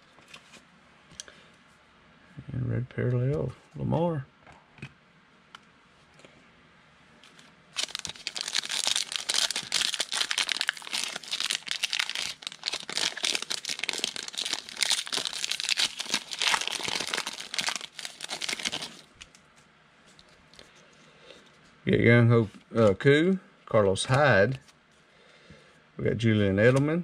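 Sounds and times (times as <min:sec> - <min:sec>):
wrapper tearing and crinkling: 0:07.8 - 0:19.4.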